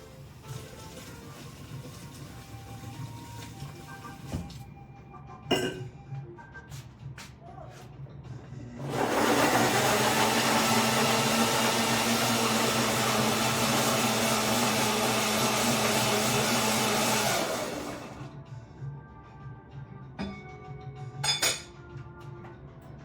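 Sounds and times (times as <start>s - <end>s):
blender running: 8.7s - 18.3s.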